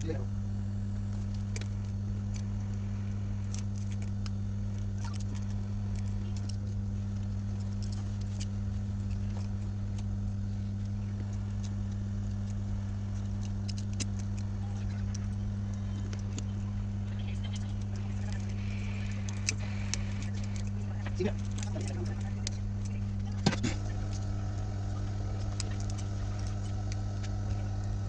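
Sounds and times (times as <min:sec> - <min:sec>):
low electrical hum: 0:00.0 - 0:28.0
small tools clicking and tapping: 0:03.4 - 0:24.4.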